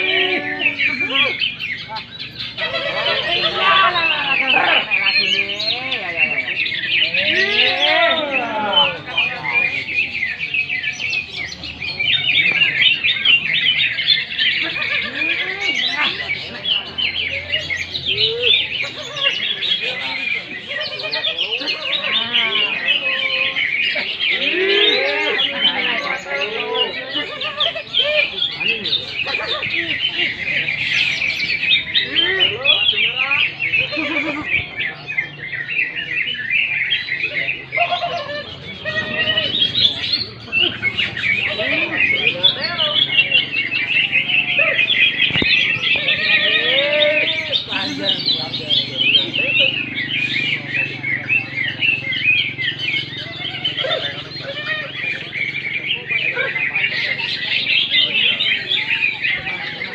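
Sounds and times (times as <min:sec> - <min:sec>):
bird warbling song: 0:00.0 - 0:59.9
bird chirping and whistling: 0:38.5 - 0:59.9.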